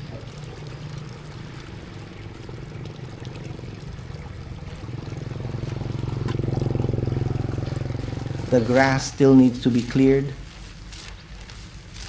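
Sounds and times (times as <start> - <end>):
small engine puttering: 0.0 - 12.0.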